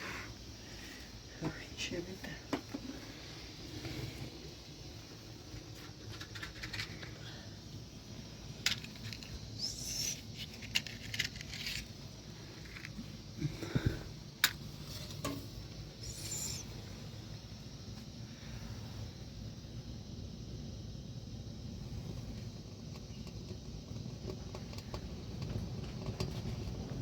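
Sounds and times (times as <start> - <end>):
sharp clicks and light knocks: 22.9 - 26.8.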